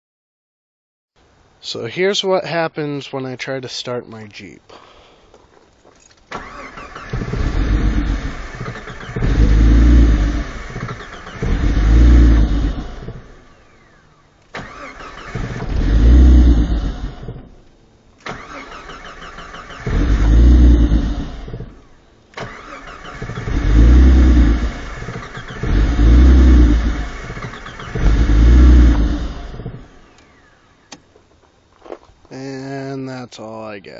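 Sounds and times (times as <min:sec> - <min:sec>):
car engine cranking without starting: 0:06.0 - 0:31.1.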